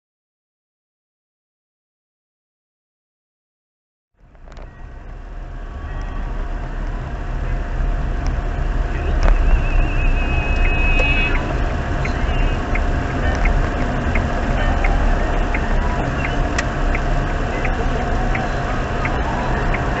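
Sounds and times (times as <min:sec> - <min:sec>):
road noise: 0:04.2 - 0:20.0
vehicle engine rumble: 0:04.2 - 0:20.0.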